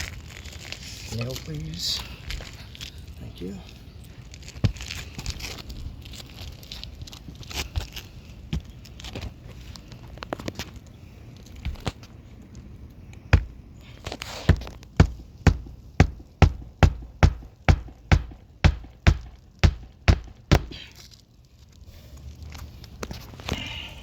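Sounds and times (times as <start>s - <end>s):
hammer striking a nail: 14.4s - 20.8s.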